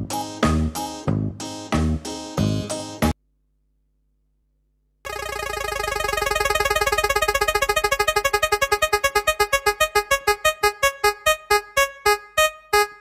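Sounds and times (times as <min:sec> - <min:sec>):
synthesized pulsing tone: 0:05.1 - 0:13.0.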